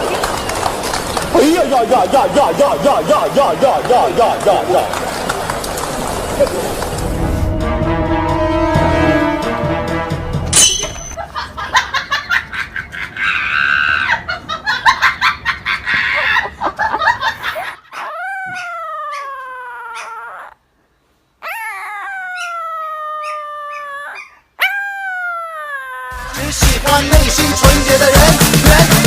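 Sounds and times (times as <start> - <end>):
dog howling: 17.9 - 20.6, 21.4 - 26.3
pop music: 26.2 - 29.0.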